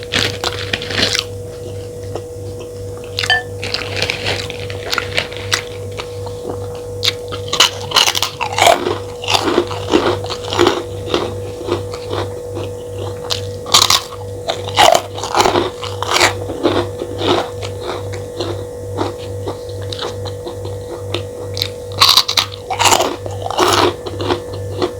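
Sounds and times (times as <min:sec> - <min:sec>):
person crunching and chewing: 0:00.0 - 0:24.9.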